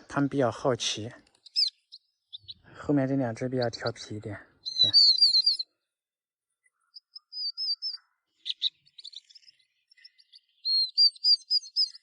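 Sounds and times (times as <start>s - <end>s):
fledgling birds chirping: 0.0s - 6.0s, 6.6s - 12.0s.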